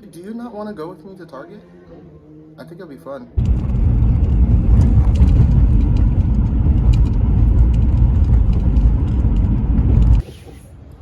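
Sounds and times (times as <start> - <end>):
car road noise rumble: 3.4 - 10.2.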